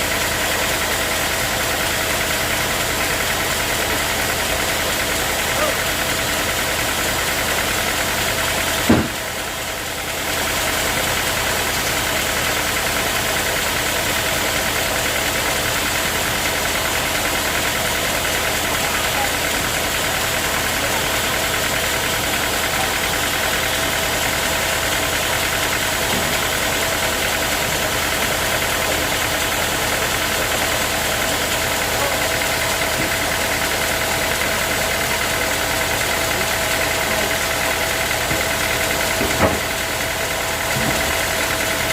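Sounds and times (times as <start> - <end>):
sawmill saw whining: 0.0 - 41.9
sharp knock: 8.9 - 9.2.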